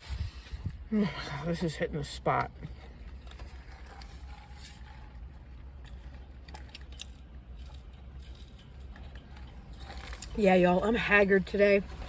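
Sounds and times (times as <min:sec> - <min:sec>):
steady low hum: 0:00.0 - 0:12.0
person chewing food: 0:02.6 - 0:10.4.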